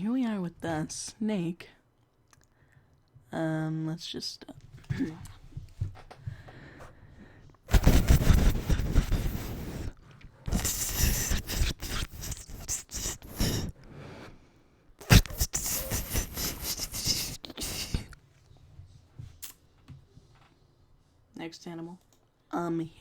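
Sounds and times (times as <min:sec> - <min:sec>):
man hissing with his mouth: 0:07.7 - 0:14.3, 0:15.0 - 0:18.2.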